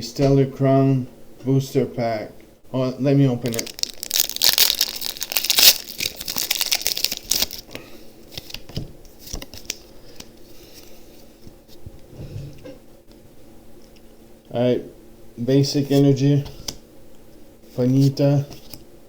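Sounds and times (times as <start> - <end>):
foil wrapper tearing and crinkling: 3.4 - 7.7.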